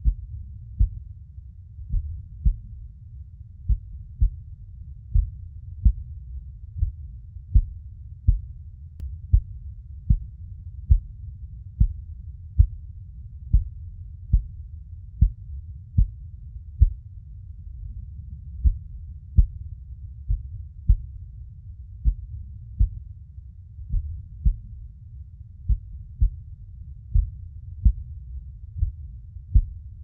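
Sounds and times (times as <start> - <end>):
heartbeat thumps: 0.0 - 1.1, 1.8 - 2.8, 3.6 - 8.6, 9.2 - 12.8, 13.4 - 14.6, 15.2 - 16.2, 16.8 - 17.0, 18.5 - 21.3, 22.0 - 23.1, 23.8 - 24.8, 25.6 - 30.0
steady low rumble: 0.0 - 30.0.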